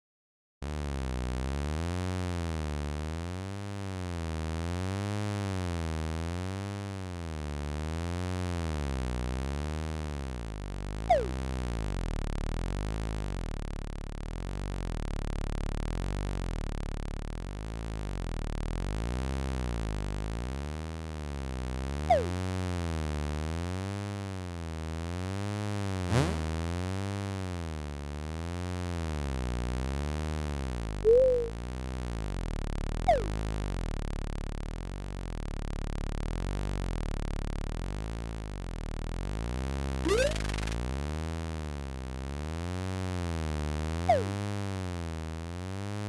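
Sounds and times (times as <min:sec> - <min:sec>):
short falling chirp: 0:31.1 - 0:31.5, 0:40.1 - 0:40.8
wavering electronic drone: 0:31.1 - 0:31.5, 0:40.1 - 0:40.8.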